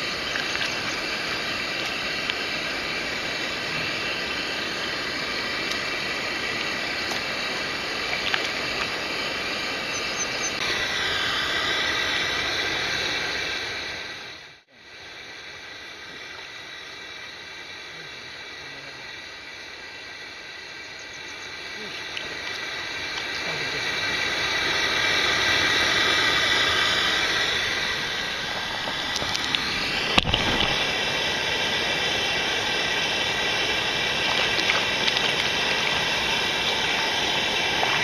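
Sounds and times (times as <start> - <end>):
stream water rushing: 0.0 - 17.0, 21.5 - 38.0.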